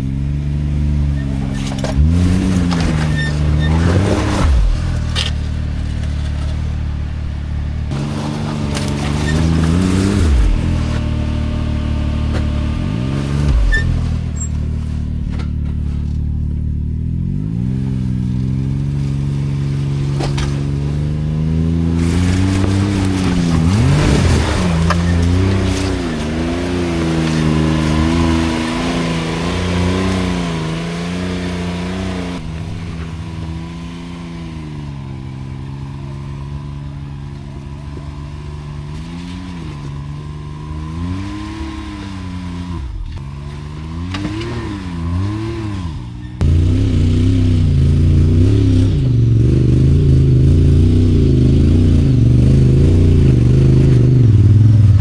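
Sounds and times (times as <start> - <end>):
off-road vehicle engine revving: 0.0 - 55.0.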